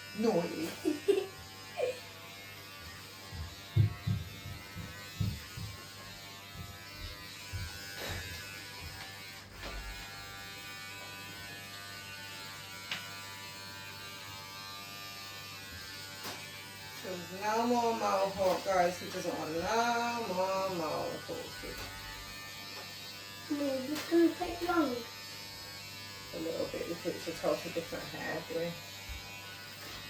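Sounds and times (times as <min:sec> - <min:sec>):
electric hair clippers buzzing: 0:00.0 - 0:30.0.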